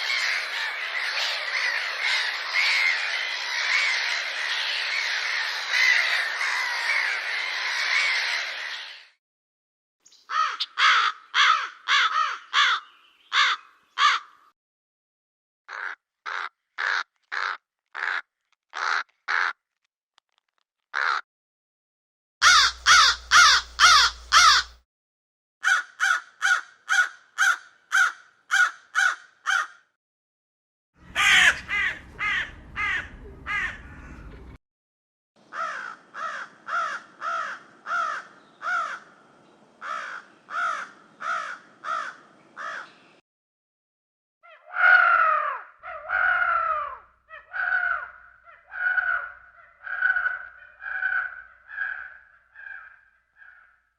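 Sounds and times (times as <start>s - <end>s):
crows cawing: 0.0s - 8.8s, 10.3s - 14.5s, 15.7s - 19.6s, 21.0s - 21.2s, 22.4s - 24.8s, 25.6s - 29.9s, 31.0s - 34.3s, 35.5s - 39.2s, 39.8s - 43.0s, 44.5s - 53.9s
low background rumble: 31.0s - 34.6s.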